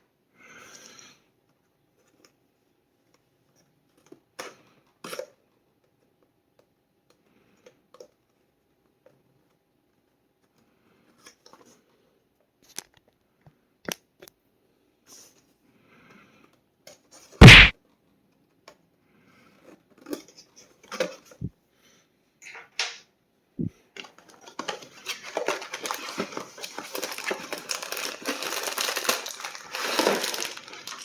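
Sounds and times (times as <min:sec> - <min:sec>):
plastic bags crinkling: 0:24.2 - 0:31.0.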